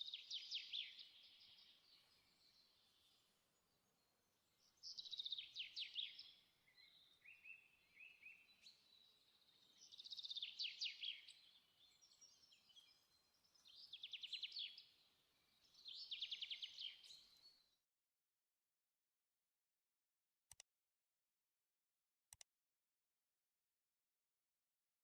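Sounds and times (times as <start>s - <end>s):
songbird chirping: 0.0s - 17.8s.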